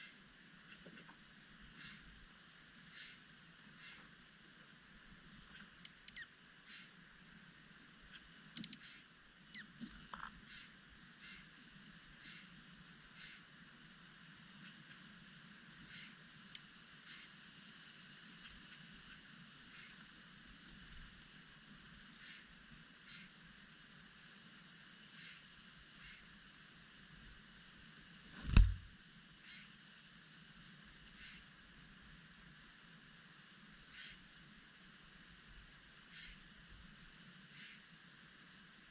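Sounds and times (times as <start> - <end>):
steady outdoor hiss: 0.0 - 38.9
songbirds chip calls: 1.7 - 2.1, 2.8 - 4.4, 5.4 - 7.0, 7.8 - 11.5, 12.2 - 12.5, 15.8 - 17.3, 18.4 - 20.1, 21.2 - 23.4, 25.1 - 27.2, 36.0 - 36.4
loud thump: 28.4 - 28.9.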